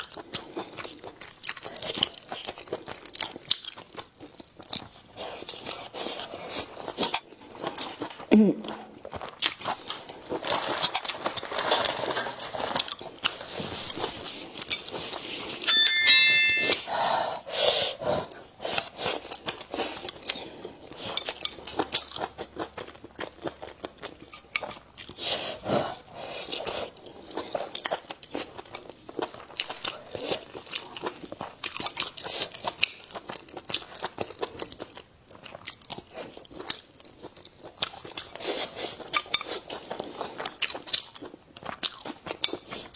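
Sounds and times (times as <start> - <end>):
chewing and crunching: 0.0 - 15.5, 18.2 - 42.9
bright ringing clink: 15.7 - 16.9.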